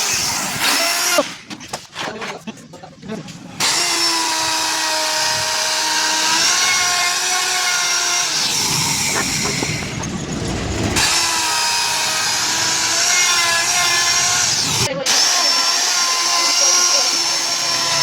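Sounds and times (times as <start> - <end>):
bit grinding into wood: 3.6 - 14.9
rotary carving tool whining: 3.6 - 18.0.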